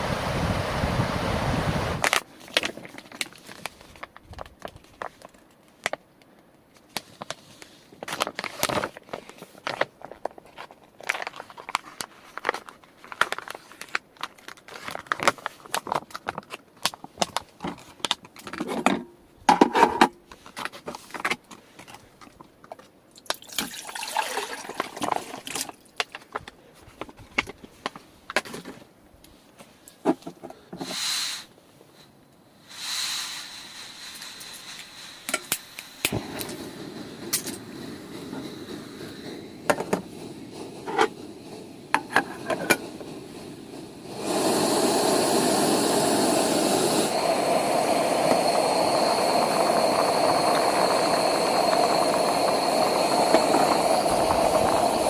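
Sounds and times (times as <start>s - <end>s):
wind buffeting microphone: 0.0s - 2.0s, 36.1s - 44.8s, 46.4s - 55.0s
objects being handled: 2.0s - 23.0s.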